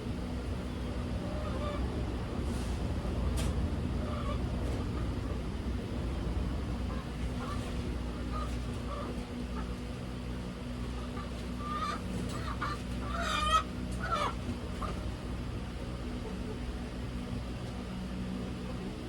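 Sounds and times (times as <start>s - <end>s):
steady low hum: 0.0s - 19.0s
chickens clucking and squawking: 0.2s - 19.0s.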